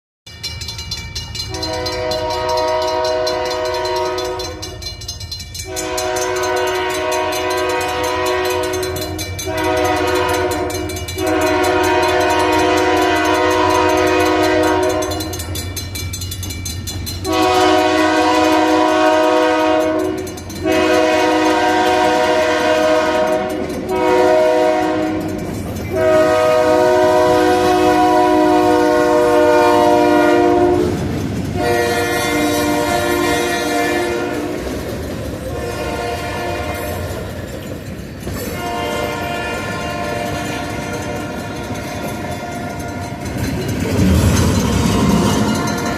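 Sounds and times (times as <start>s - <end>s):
diesel locomotive rumbling: 0.3s - 45.9s
locomotive air horn blowing: 1.5s - 4.8s, 5.6s - 15.4s, 17.2s - 34.7s, 35.5s - 37.2s, 38.4s - 42.8s.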